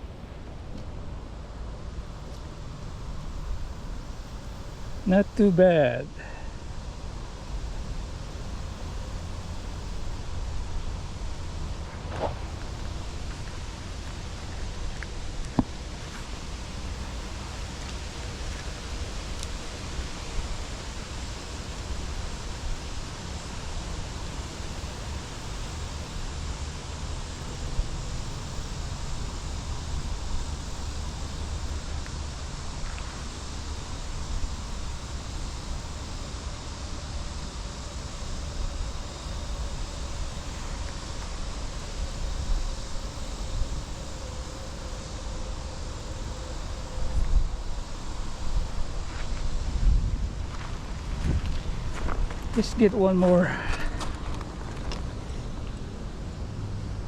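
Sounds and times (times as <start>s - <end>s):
faint steady drone: 0.0s - 57.0s
wind buffeting microphone: 46.9s - 52.6s.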